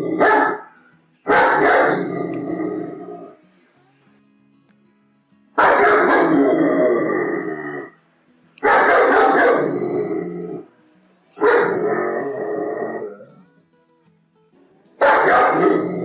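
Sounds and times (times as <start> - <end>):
faint background music: 0.0 - 16.0
dog barking aggressively: 0.1 - 0.7, 1.3 - 2.2, 5.6 - 6.5, 8.6 - 10.0, 11.4 - 12.0, 15.0 - 16.0.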